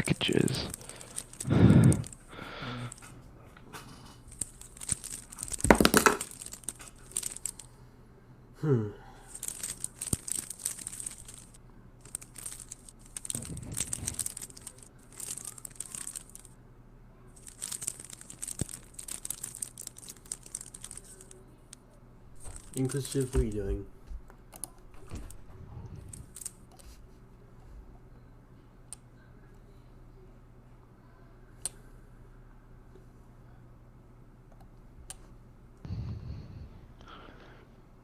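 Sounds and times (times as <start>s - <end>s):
rustling and crinkling handling: 0.0s - 7.7s, 9.3s - 16.5s, 17.4s - 21.7s, 22.4s - 24.3s, 25.0s - 27.2s.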